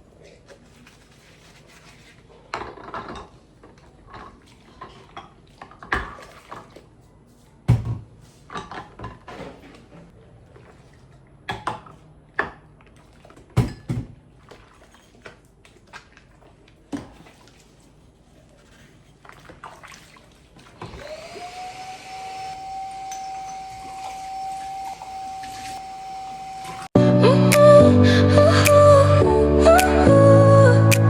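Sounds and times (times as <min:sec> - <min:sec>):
appliance motor humming: 0:20.9 - 0:26.9.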